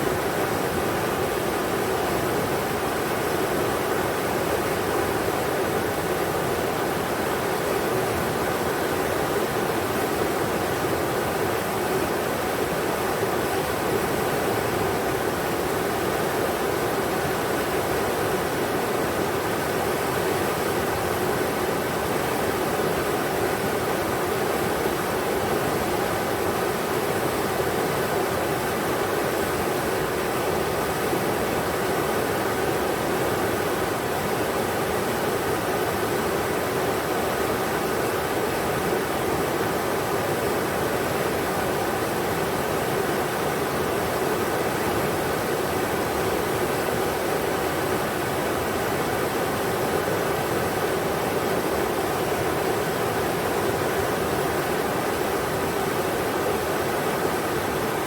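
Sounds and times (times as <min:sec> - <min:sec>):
river rushing over rocks: 0:00.0 - 0:58.0.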